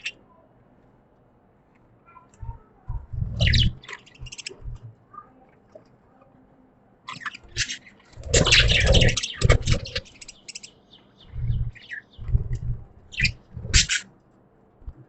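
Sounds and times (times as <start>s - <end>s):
budgies chirping and chattering: 0.0s - 0.2s, 2.4s - 4.9s, 7.1s - 14.1s
low thumps: 2.4s - 4.9s, 11.3s - 13.9s.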